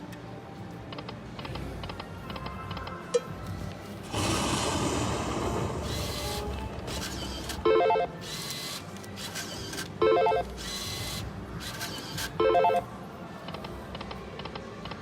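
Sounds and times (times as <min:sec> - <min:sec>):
slot machine sounds: 0:06.4 - 0:08.4, 0:10.0 - 0:10.6, 0:12.4 - 0:12.9
casino background noise: 0:06.4 - 0:15.0.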